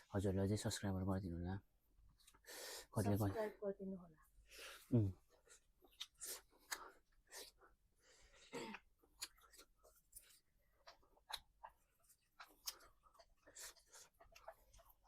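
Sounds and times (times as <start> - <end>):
quiet chewing with crunches: 4.8 - 15.0.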